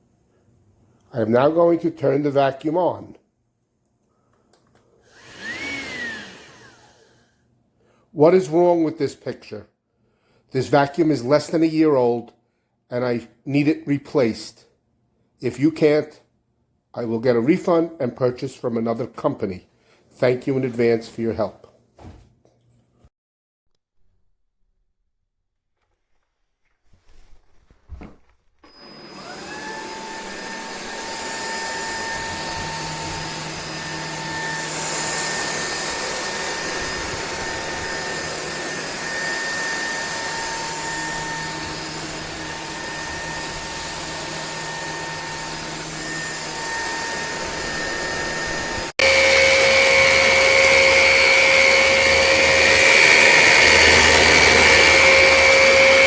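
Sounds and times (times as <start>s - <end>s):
stick vacuum whining: 4.5s - 7.3s, 28.6s - 56.0s.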